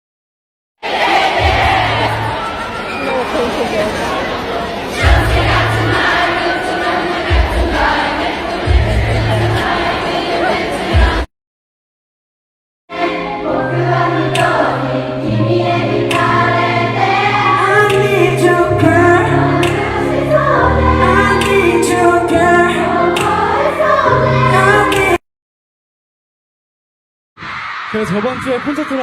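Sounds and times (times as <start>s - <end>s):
crowd singing: 0.8s - 11.3s, 12.9s - 25.2s.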